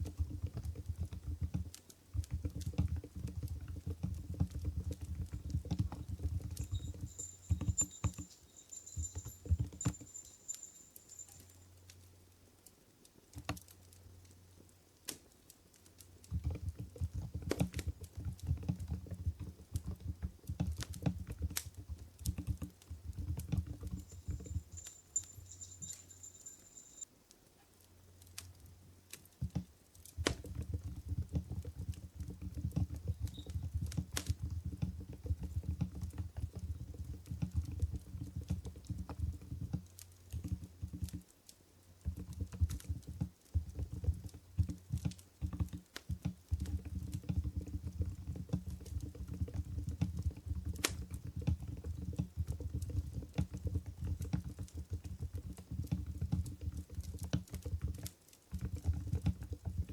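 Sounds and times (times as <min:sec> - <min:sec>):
soft keyboard typing: 0:00.0 - 0:12.0, 0:16.1 - 0:27.0, 0:29.4 - 0:59.9
campfire crackling: 0:06.6 - 0:18.1, 0:19.7 - 0:32.4.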